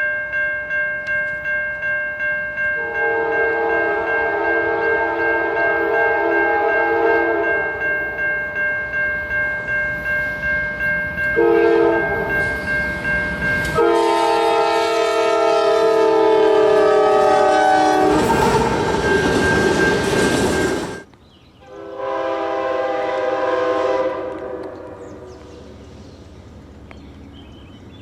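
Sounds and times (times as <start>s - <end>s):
train rolling past: 1.1s - 28.0s
locomotive air horn chord: 2.8s - 7.9s, 11.4s - 12.4s, 13.7s - 19.1s, 21.7s - 25.4s.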